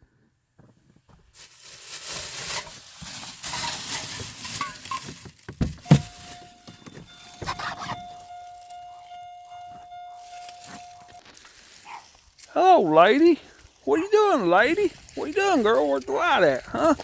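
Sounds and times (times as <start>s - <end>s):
rustling and crunching: 0.6s - 17.0s
steady high tone: 5.9s - 11.3s.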